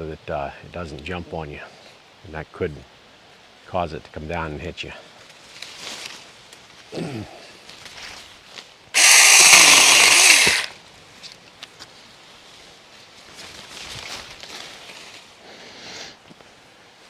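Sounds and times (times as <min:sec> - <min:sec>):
electric chainsaw cutting branch: 0:09.0 - 0:10.8.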